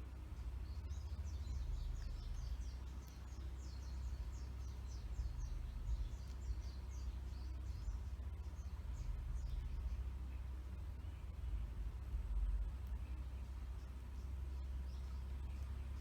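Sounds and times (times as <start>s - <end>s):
budgerigars chirping: 0.0s - 11.6s
steady low rumble: 0.0s - 16.0s.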